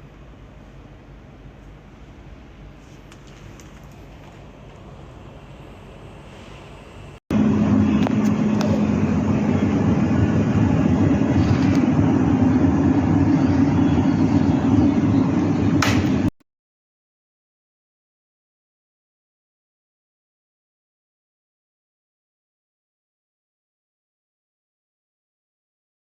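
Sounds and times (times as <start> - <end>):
electric kettle rushing and humming: 4.5 - 16.3.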